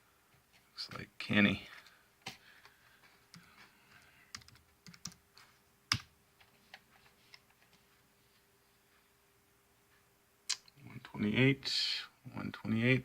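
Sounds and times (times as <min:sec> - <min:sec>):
typing on computer keyboard: 0:04.3 - 0:05.2, 0:05.9 - 0:06.1.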